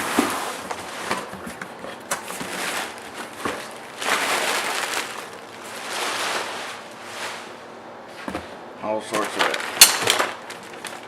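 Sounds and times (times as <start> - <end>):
cardboard box rustling and scraping: 0.0 - 8.5.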